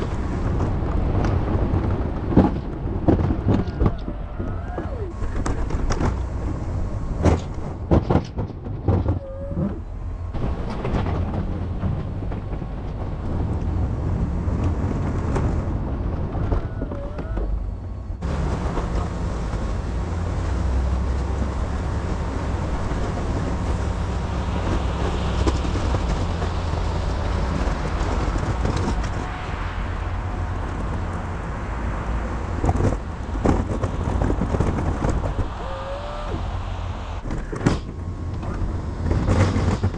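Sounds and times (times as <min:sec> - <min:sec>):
hissy snow plowing noise: 0:18.1 - 0:39.9.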